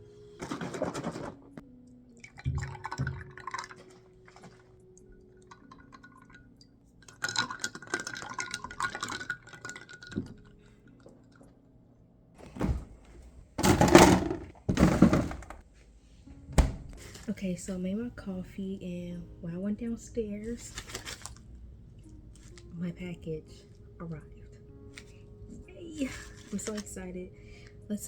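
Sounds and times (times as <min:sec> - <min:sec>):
liquid pouring: 0:02.1 - 0:11.5.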